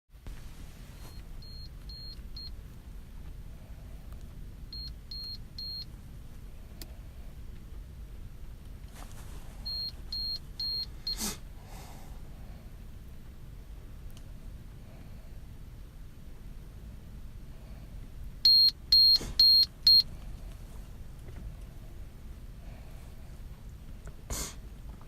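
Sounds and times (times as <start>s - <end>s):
steady low hum: 0.2s - 25.0s
high-pitched beeps: 1.1s - 2.5s, 4.8s - 5.8s, 9.7s - 10.9s, 18.5s - 20.1s.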